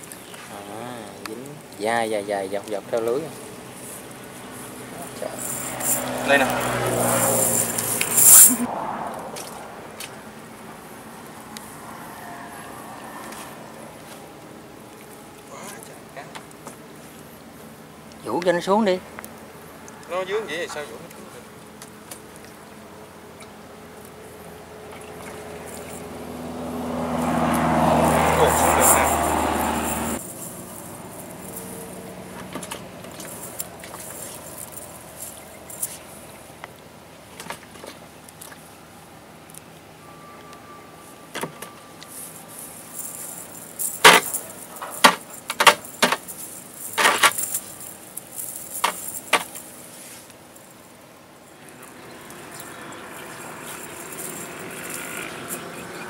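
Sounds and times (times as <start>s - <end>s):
lead sinkers clinking: 42.9s - 49.8s
motor engine humming: 51.5s - 56.0s.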